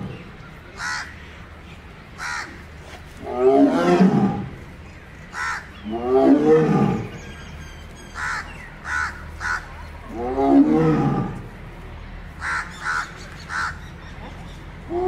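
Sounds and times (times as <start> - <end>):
tiger roaring: 3.2 - 4.6, 5.8 - 7.2, 10.1 - 11.5.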